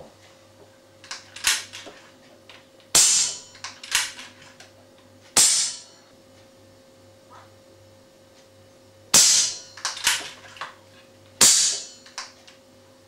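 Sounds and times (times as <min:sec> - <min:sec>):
muffled air rifle shots: 0:03.0 - 0:04.0.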